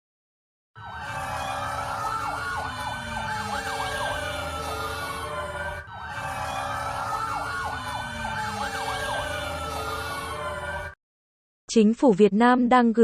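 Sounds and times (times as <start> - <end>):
emergency vehicle sirens wailing: 0.8 - 11.0
siren yelping sweeps: 0.8 - 11.0.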